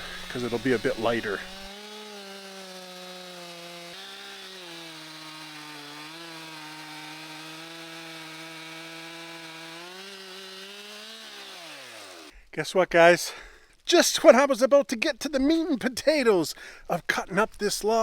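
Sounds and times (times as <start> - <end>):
chainsaw cutting a log: 0.0 - 12.3.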